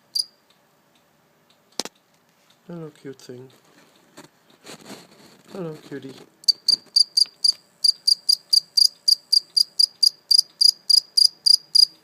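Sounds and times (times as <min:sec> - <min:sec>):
cricket chirping: 0:00.1 - 0:00.4, 0:06.4 - 0:12.0.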